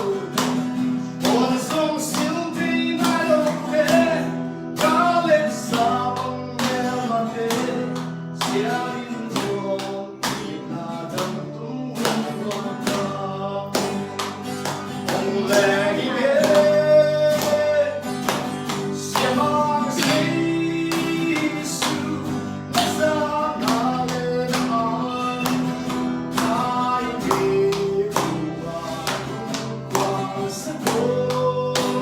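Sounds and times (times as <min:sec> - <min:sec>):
guitar: 0:00.0 - 0:32.0
voices singing: 0:14.9 - 0:32.0.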